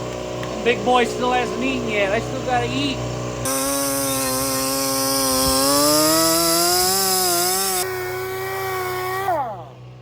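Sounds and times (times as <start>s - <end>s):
sander whine: 2.8s - 10.0s
sanding grind on metal: 3.5s - 7.9s.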